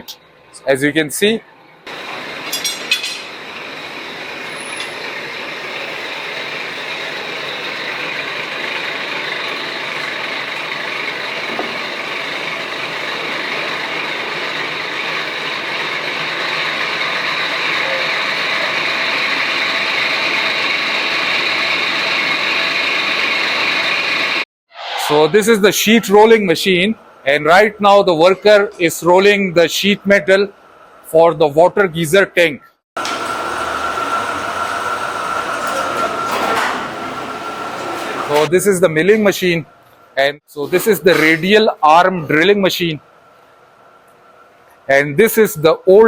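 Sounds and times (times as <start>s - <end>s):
workshop machine running: 1.9s - 24.4s, 33.0s - 38.6s.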